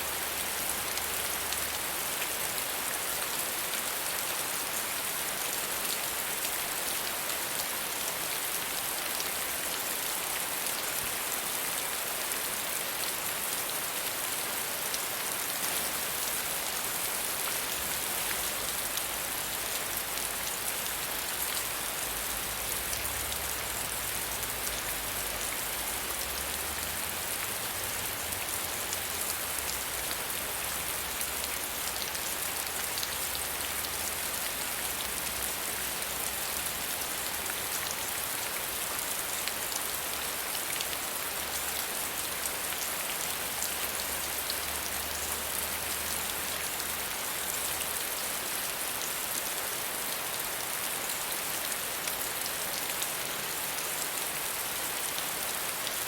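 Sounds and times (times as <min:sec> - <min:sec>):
soft steady rain: 0:00.0 - 0:56.0.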